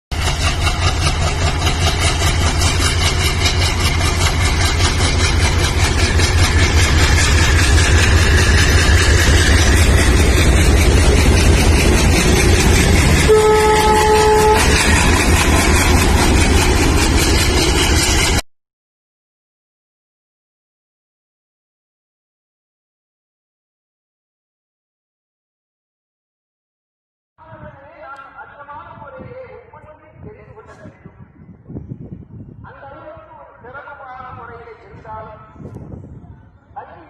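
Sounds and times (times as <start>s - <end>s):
diesel locomotive engine chugging: 0.1s - 18.4s
train horn blast: 13.0s - 15.1s.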